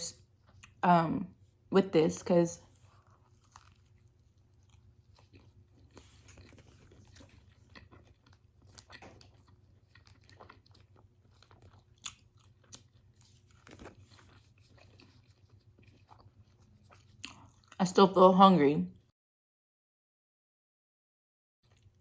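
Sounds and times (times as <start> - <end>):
person chewing food: 0.2 - 0.8, 2.6 - 17.8, 21.6 - 22.0.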